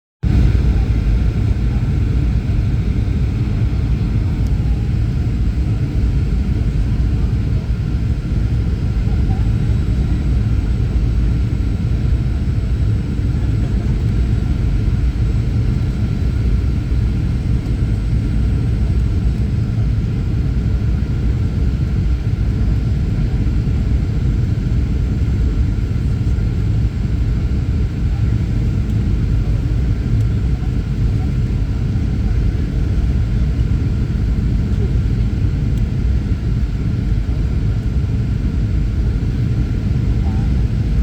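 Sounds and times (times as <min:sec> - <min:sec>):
aircraft cabin engine rumble: 0:00.2 - 0:41.0
faint steady whine: 0:00.3 - 0:41.0.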